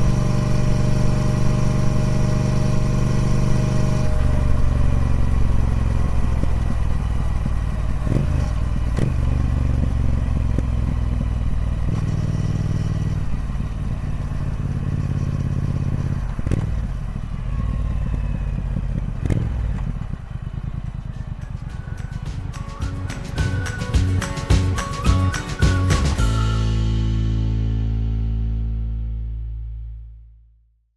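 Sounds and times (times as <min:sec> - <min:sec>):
motorcycle engine running: 0:00.0 - 0:29.6
sharp clacks: 0:19.0 - 0:26.3.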